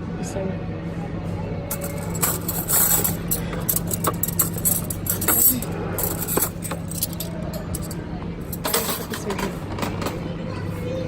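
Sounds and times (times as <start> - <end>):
low mechanical hum: 0.0 - 11.0
tableware and trays clinking: 1.7 - 10.1.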